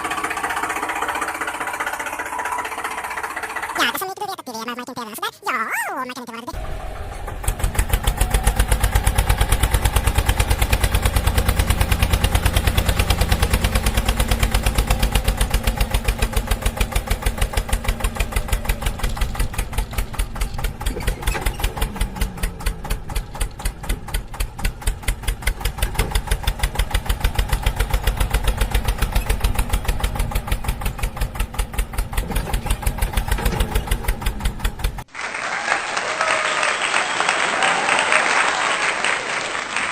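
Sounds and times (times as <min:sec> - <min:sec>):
tractor engine chugging: 0:00.0 - 0:05.3, 0:06.6 - 0:35.1.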